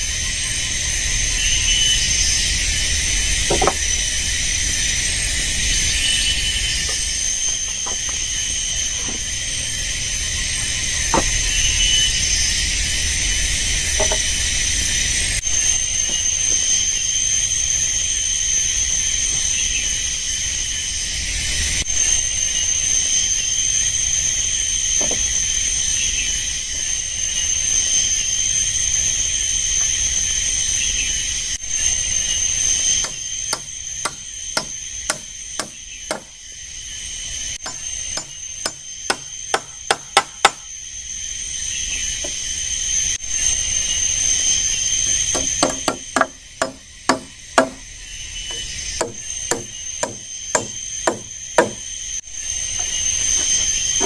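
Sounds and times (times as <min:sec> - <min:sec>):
forest insects droning: 0:00.0 - 0:54.0
tool blows on wood: 0:48.5 - 0:52.0.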